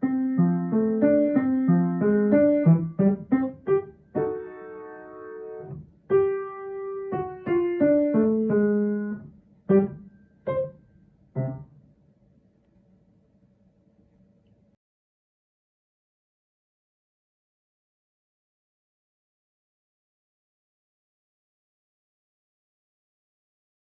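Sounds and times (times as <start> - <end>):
solo piano: 0.0 - 12.0.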